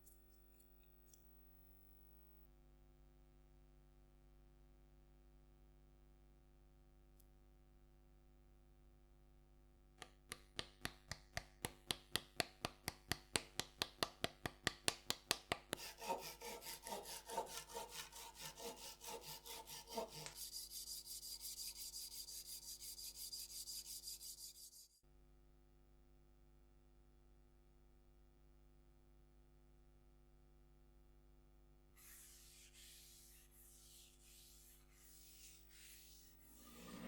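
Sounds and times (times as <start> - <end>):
hand tool scraping strokes: 15.7 - 25.0, 32.0 - 37.0
dense rasping: 15.8 - 24.7.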